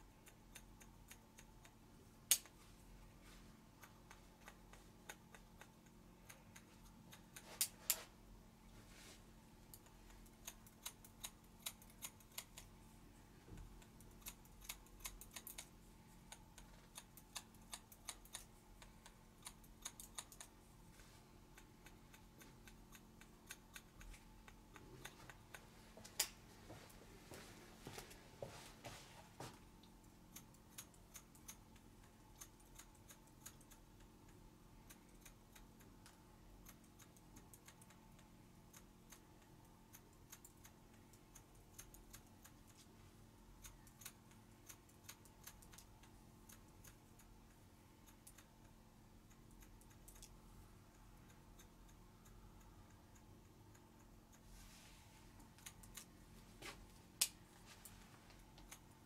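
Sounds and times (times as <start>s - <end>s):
scissors snipping hair: 0.1s - 2.6s, 3.8s - 8.1s, 9.7s - 12.7s, 13.7s - 20.6s, 43.6s - 47.3s, 55.4s - 56.2s.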